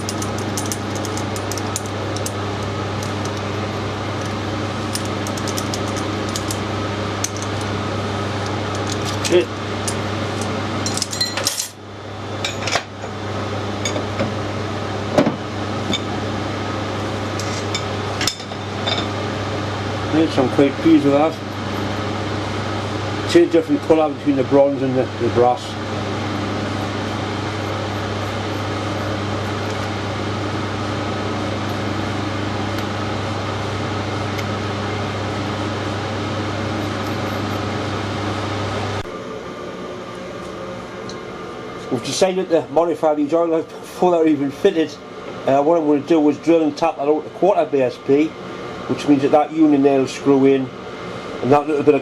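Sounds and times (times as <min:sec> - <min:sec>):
metal parts clinking: 0:00.0 - 0:02.4
steady workshop hum: 0:00.0 - 0:52.0.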